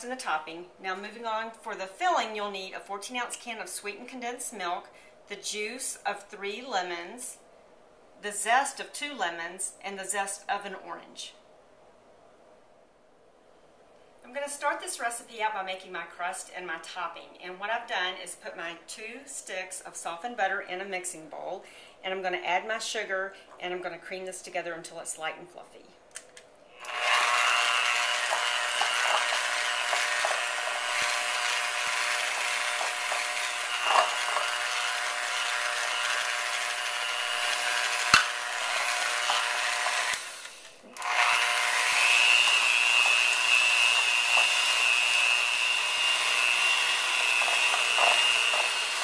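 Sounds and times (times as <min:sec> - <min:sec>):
electric mixer running: 0:26.8 - 0:49.0.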